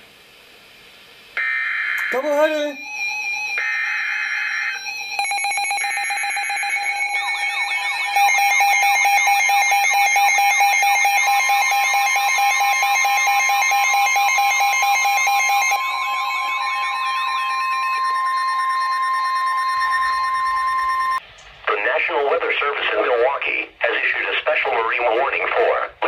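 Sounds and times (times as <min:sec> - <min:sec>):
warbling siren-like alarm: 0:01.4 - 0:21.2
steady warning tone: 0:01.4 - 0:24.3
rapid beeping: 0:02.0 - 0:21.2.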